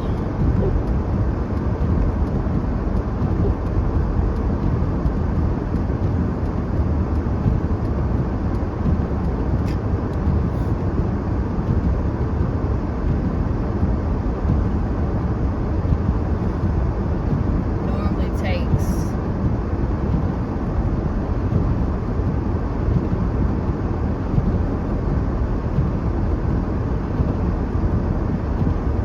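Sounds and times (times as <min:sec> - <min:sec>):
car road and engine noise: 0:00.0 - 0:29.0.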